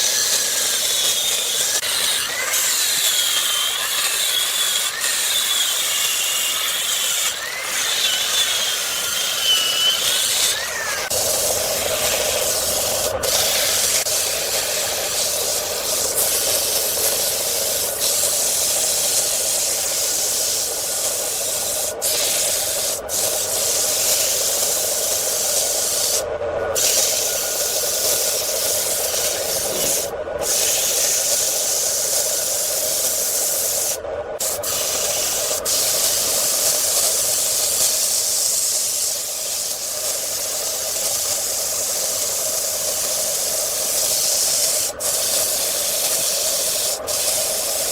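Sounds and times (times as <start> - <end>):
wood lathe humming: 0.0 - 26.2
sanding hiss on spinning wood: 0.0 - 47.9.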